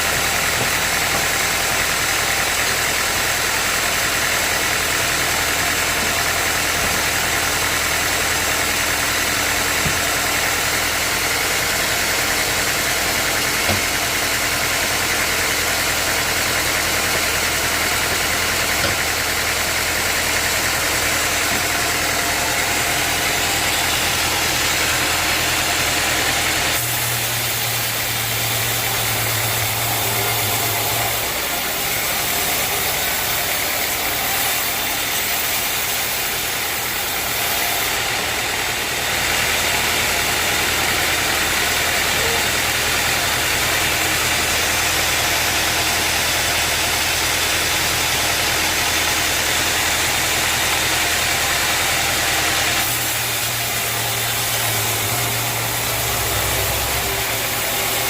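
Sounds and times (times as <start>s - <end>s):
sawmill machinery humming: 0.0s - 58.0s.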